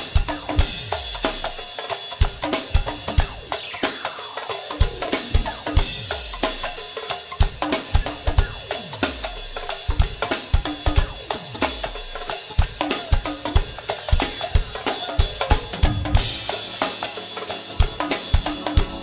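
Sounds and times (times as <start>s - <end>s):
drum kit groove: 0.0s - 19.0s
hand percussion: 0.0s - 19.0s
deep drums falling in pitch: 2.2s - 17.2s.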